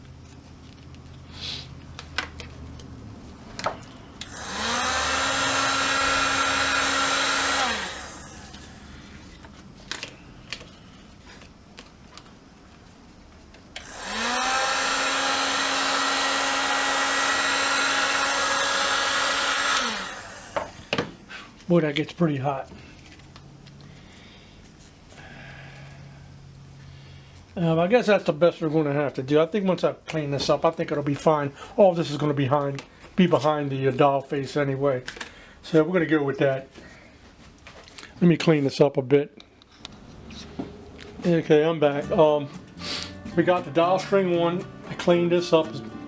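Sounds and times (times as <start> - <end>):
hot-air blower motor whine: 3.6 - 10.5, 13.8 - 21.2, 39.8 - 45.3.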